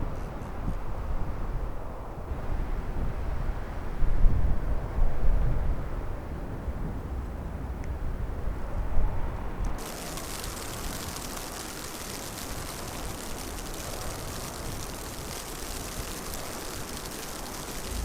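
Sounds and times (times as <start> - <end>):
snowstorm wind hissing: 8.8 - 18.0.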